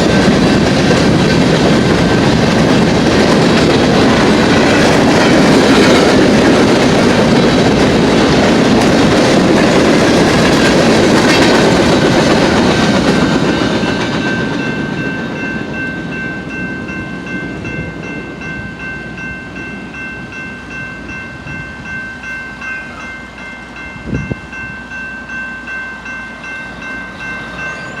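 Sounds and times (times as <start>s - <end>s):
train wheels clattering over rails: 0.0s - 17.0s.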